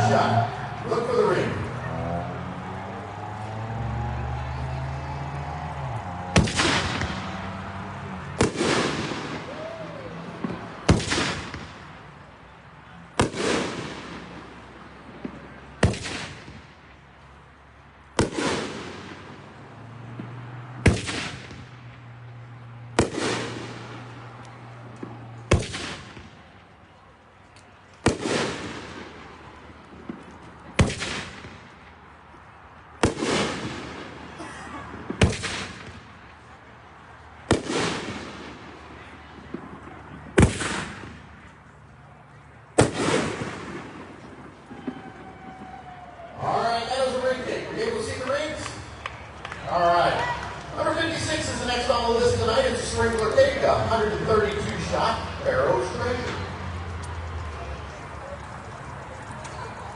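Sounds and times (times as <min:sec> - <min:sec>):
fireworks bangs: 0:05.4 - 0:12.2, 0:13.0 - 0:17.0, 0:18.1 - 0:27.0, 0:28.0 - 0:32.1, 0:32.8 - 0:41.8, 0:42.6 - 0:57.4.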